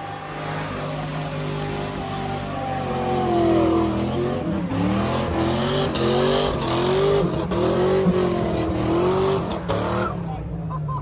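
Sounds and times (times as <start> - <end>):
car engine revving hard: 0.0 - 10.2.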